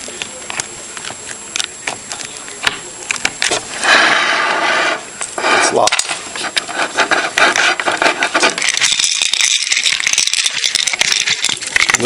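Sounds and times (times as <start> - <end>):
glass jar rattling: 7.9 - 12.0.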